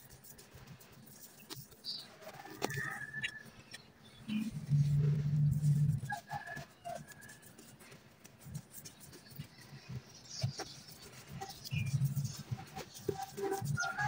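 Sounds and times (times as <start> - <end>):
bird chirps: 2.7 - 5.1.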